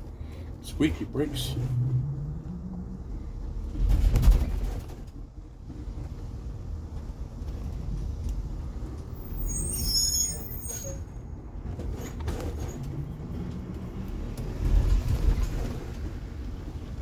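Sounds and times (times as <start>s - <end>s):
bus rumbling: 0.0s - 17.0s
heavy thump and rattle: 3.7s - 5.2s
low brake squeak: 9.1s - 13.0s.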